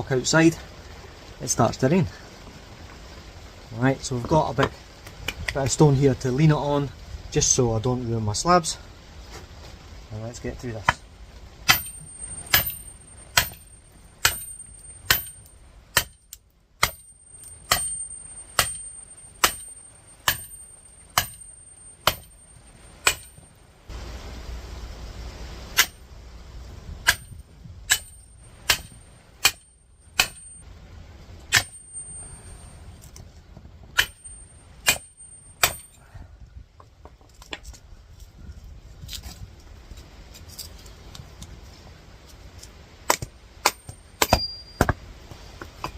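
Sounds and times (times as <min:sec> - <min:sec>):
hammer clanging on axe head: 0:11.7 - 0:16.2, 0:16.8 - 0:23.4, 0:43.7 - 0:45.0.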